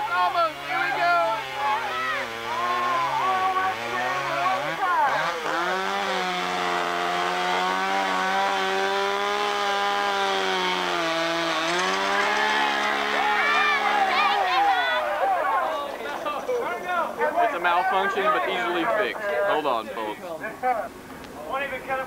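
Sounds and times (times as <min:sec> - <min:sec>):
chainsaw cutting wood: 0:00.0 - 0:15.1.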